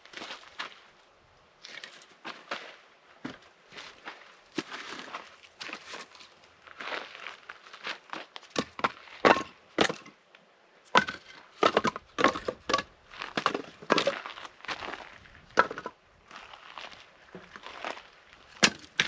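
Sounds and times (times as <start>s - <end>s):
dry wood snapping: 18.6s - 19.0s.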